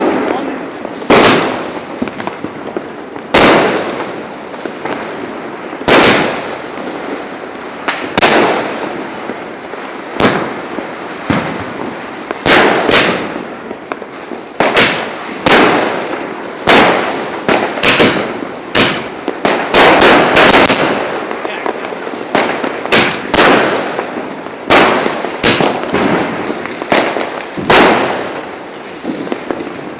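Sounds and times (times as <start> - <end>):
firecrackers bursting: 0.0 - 29.9.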